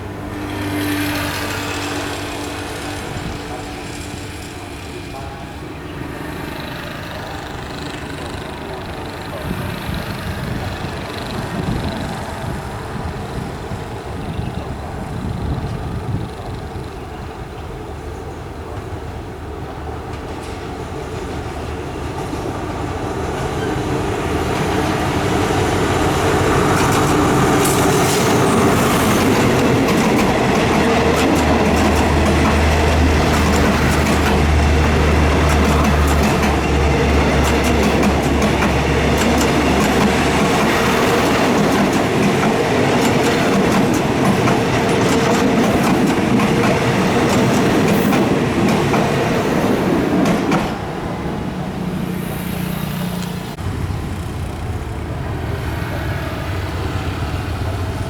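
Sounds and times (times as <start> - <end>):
locomotive engine drone: 0.0 - 18.6, 21.4 - 49.2, 50.7 - 58.0
train wheels clicking over rail joints: 20.0 - 58.0.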